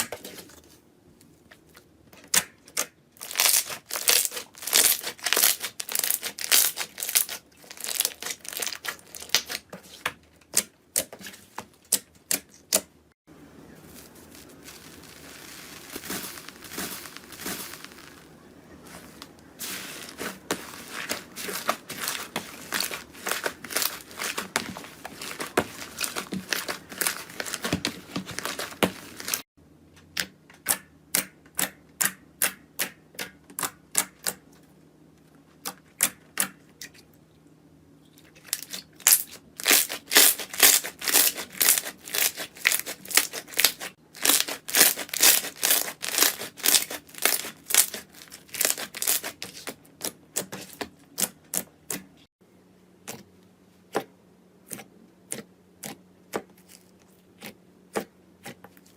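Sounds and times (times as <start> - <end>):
slime clicking and crackling: 2.7 - 9.6, 13.9 - 18.2, 18.9 - 29.4, 38.6 - 52.0.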